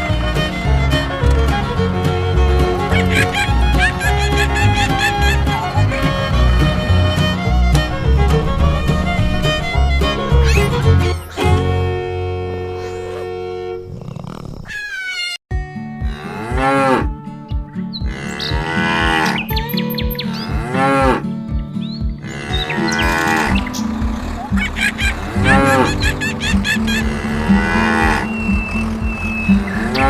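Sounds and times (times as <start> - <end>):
background music with low beat: 0.0 - 12.8, 15.5 - 30.0
cartoon cow mooing: 25.2 - 28.3.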